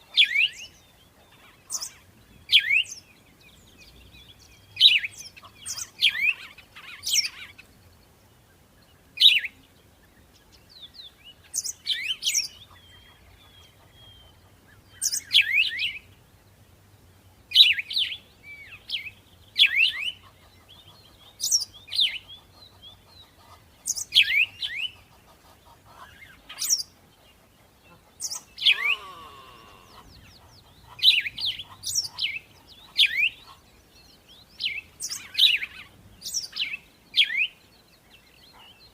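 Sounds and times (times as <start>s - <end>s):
songbird chirping: 0.0s - 38.9s
lower bird call: 28.0s - 32.0s.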